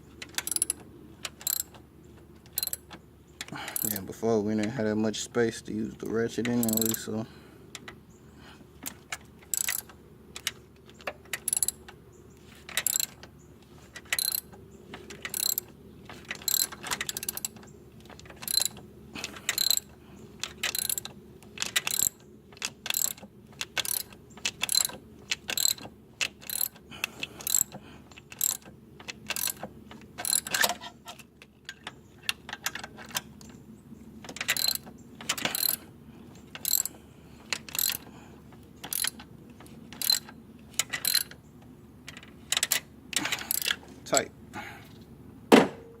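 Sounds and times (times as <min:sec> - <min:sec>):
socket ratchet clicking: 0:00.2 - 0:01.8, 0:02.5 - 0:02.8, 0:03.8 - 0:04.0, 0:06.6 - 0:07.0, 0:09.5 - 0:10.5, 0:11.3 - 0:11.8, 0:12.7 - 0:13.2, 0:14.1 - 0:14.5, 0:15.2 - 0:15.7, 0:16.3 - 0:17.6, 0:18.4 - 0:18.8, 0:19.5 - 0:26.8, 0:27.4 - 0:30.6, 0:34.4 - 0:35.8, 0:36.6 - 0:37.0, 0:37.6 - 0:38.1, 0:38.8 - 0:39.3, 0:40.0 - 0:41.4, 0:43.4 - 0:43.8.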